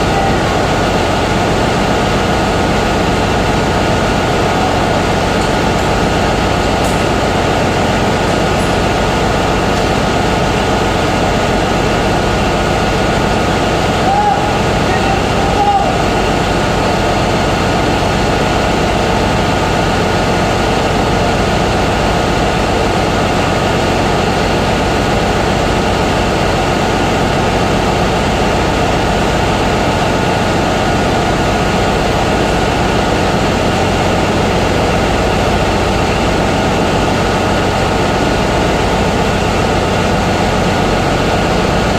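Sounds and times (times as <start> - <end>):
engine room machinery drone: 0.0 - 41.9.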